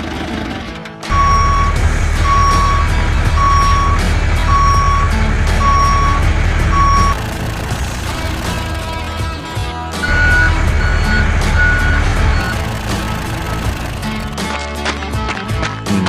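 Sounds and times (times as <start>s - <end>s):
truck reversing alarm beeps: 1.1s - 9.3s, 10.0s - 14.3s
low engine rumble: 1.1s - 14.5s.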